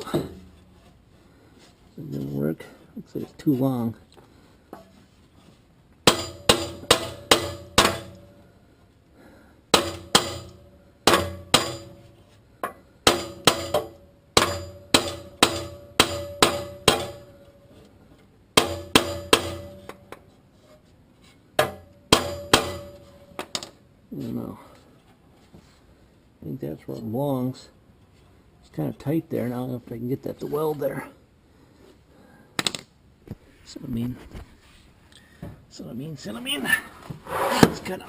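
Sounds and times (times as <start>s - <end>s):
hammer striking steel pipe: 6.0s - 8.3s, 9.7s - 17.5s, 18.6s - 20.1s, 21.6s - 23.2s.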